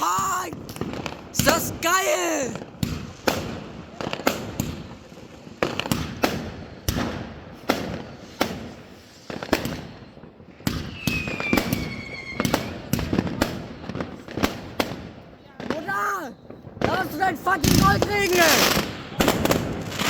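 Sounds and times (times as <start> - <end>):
fireworks bangs: 0.0 - 20.0
high firework whistle: 10.8 - 12.8.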